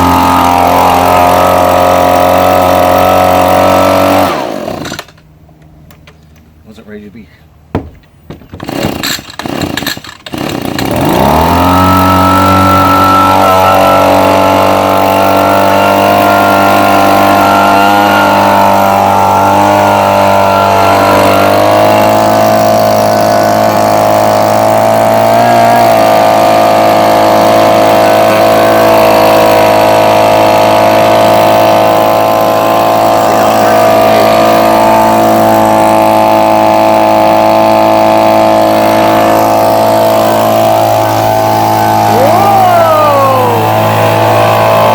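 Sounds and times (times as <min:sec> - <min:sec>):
leaf blower engine revving: 0:00.0 - 0:05.3, 0:07.8 - 0:44.9.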